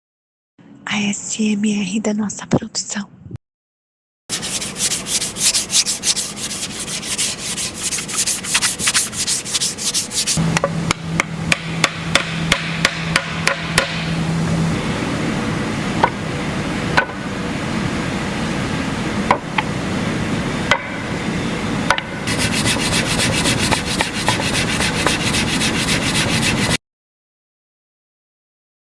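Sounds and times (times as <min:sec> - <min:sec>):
sanding strokes on wood: 0:04.3 - 0:10.4, 0:22.2 - 0:26.8
low steady hum: 0:04.3 - 0:26.8.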